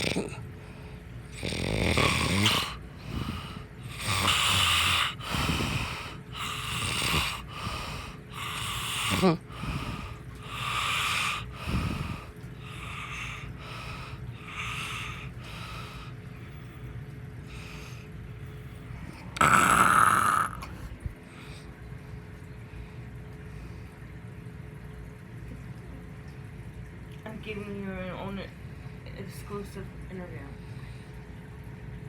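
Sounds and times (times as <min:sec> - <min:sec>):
person snoring: 0:00.0 - 0:00.4, 0:01.3 - 0:16.1, 0:19.2 - 0:20.9.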